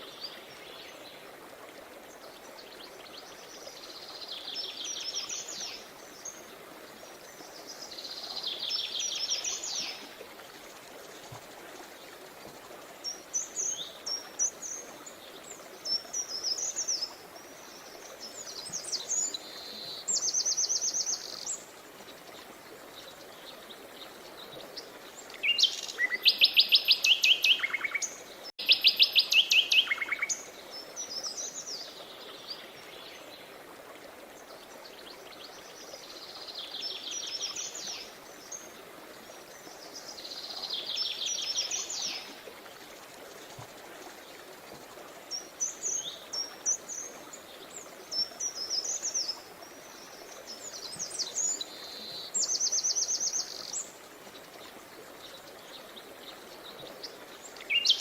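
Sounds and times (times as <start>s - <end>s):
songbirds singing: 13.0s - 33.6s, 34.3s - 58.0s.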